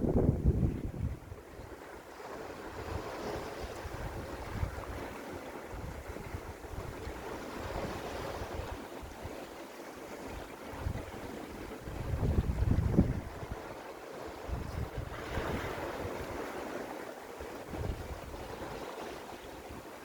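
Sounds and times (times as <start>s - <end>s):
waves washing against rocks: 0.0s - 20.0s
wind rumble on microphone: 0.0s - 20.0s.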